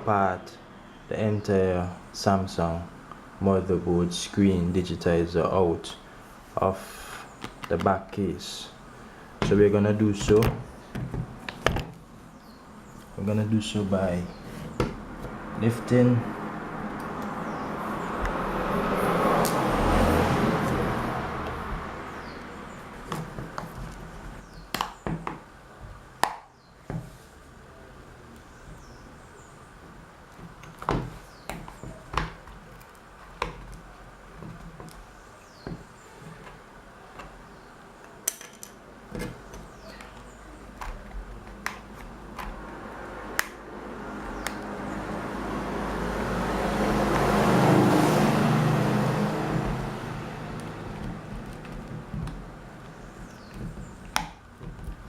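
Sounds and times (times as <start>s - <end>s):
sharp plastic clicks and taps: 24.7s - 25.4s, 39.1s - 42.7s.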